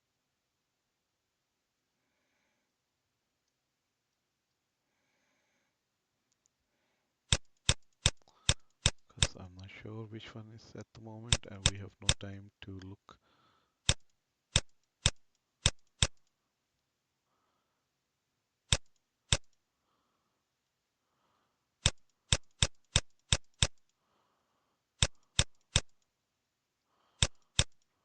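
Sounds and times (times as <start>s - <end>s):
computer mouse clicking: 7.3s - 9.7s, 11.3s - 12.9s, 13.8s - 16.3s, 18.7s - 19.6s, 21.8s - 24.0s, 25.0s - 26.1s, 27.2s - 27.9s.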